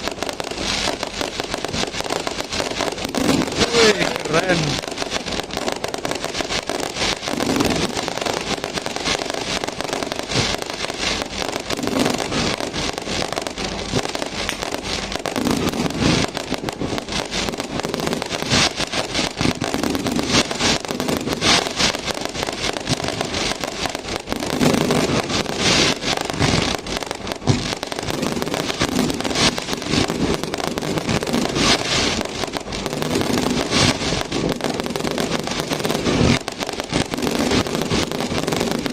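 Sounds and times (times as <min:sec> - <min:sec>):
firecrackers crackling: 0:00.0 - 0:38.9
fireworks bangs: 0:00.0 - 0:38.9.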